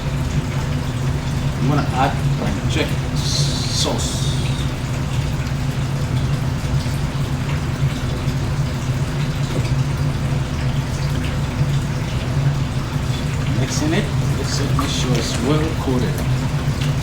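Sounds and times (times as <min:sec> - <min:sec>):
sauce sloshing and squishing: 0:00.0 - 0:17.0
steady low hum: 0:00.0 - 0:17.0.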